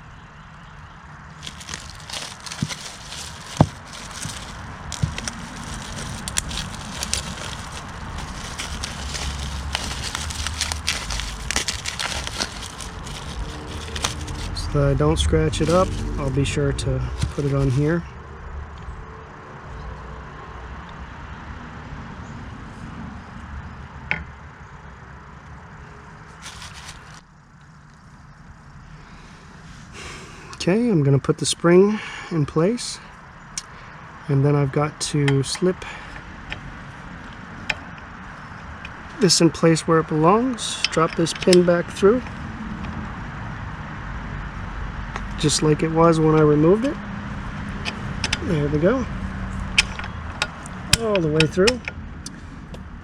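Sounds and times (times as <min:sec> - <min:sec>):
small metal parts rattling: 0:01.4 - 0:14.6, 0:17.2 - 0:17.8
steady low rumble: 0:01.4 - 0:18.2.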